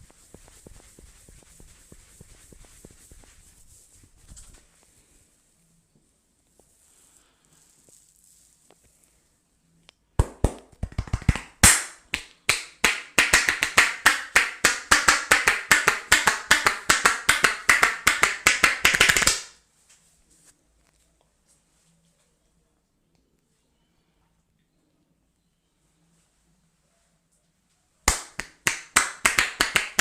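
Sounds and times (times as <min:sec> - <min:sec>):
slapping massage taps: 0:10.2 - 0:19.5, 0:28.1 - 0:30.0.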